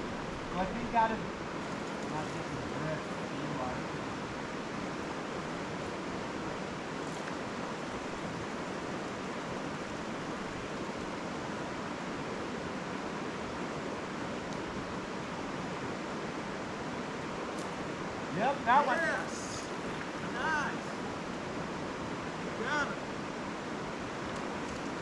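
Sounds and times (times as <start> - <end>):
river water rushing: 0.0 - 25.0.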